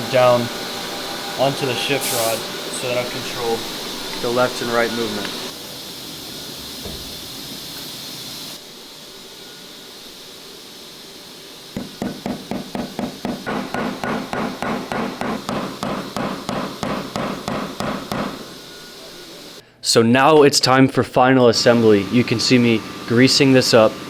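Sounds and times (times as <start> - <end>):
faint steady hiss: 0.0 - 13.5, 15.1 - 24.0
hammer striking: 11.8 - 18.6.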